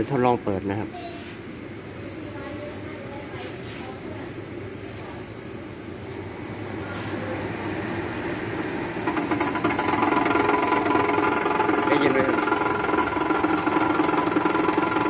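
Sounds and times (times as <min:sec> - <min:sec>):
air conditioner running: 0:00.0 - 0:15.0
rapid rattle with steady tone: 0:08.8 - 0:15.0.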